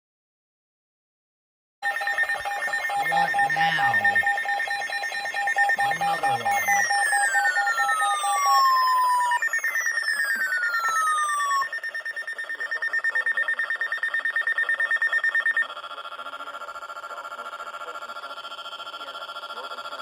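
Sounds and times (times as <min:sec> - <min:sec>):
lower pulsing alert tone: 0:01.8 - 0:15.7
falling siren sweeps: 0:01.8 - 0:16.1
rapidly pulsing high beep: 0:01.8 - 0:20.0.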